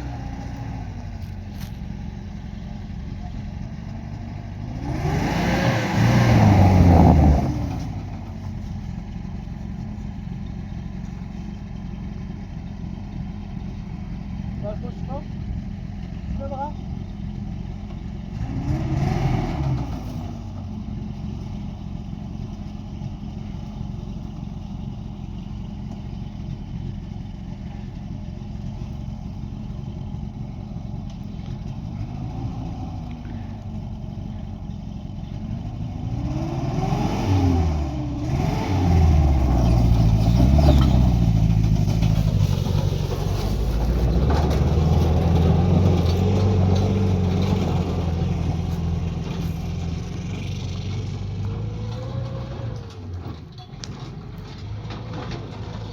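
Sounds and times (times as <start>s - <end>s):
vehicle engine revving: 4.6s - 8.5s, 18.2s - 20.6s, 35.5s - 55.9s.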